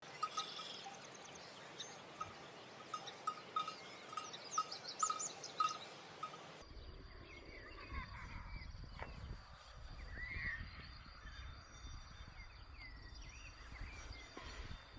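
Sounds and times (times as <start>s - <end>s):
birds calling: 0.0s - 6.6s
high bird chirps: 0.0s - 6.6s.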